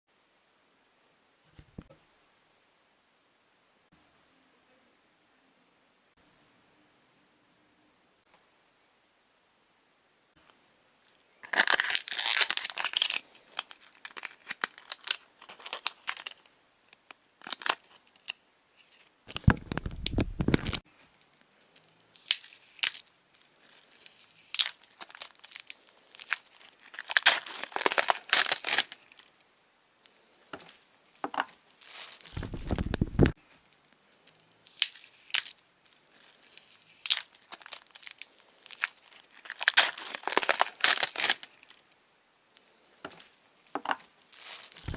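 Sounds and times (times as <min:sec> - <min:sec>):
thin material crinkling and tearing: 0:11.1 - 0:29.4, 0:30.4 - 0:41.8, 0:42.8 - 0:44.9
low thuds: 0:32.3 - 0:33.3.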